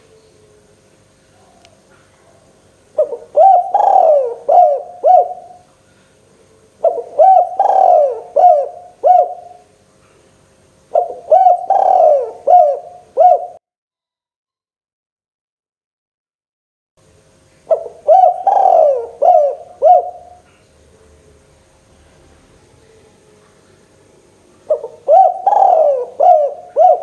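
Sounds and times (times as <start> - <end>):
dove cooing: 1.4 - 5.7, 6.5 - 9.7, 10.9 - 13.6, 17.7 - 20.6, 24.6 - 27.0.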